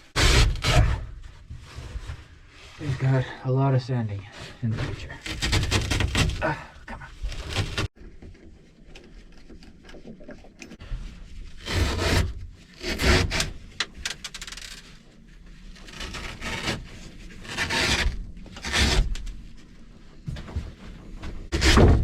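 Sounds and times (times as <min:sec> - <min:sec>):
scraping carpet off fiberglass: 0:15.7 - 0:19.5.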